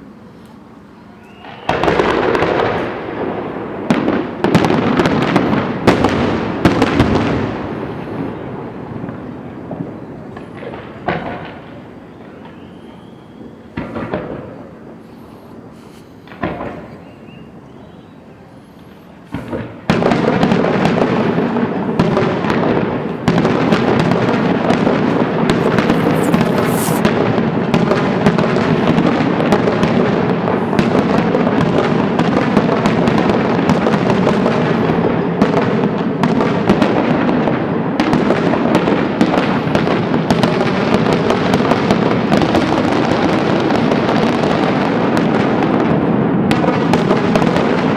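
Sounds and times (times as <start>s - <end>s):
fireworks bangs and crackle: 1.3s - 47.9s.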